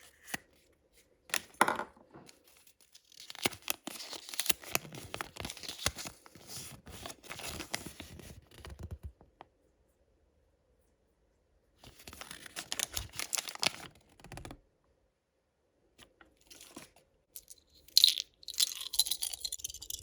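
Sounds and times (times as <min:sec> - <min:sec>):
candy wrapper tearing: 0:12.1 - 0:13.9, 0:17.4 - 0:20.0
wrapper crinkling: 0:12.1 - 0:13.9, 0:17.4 - 0:20.0.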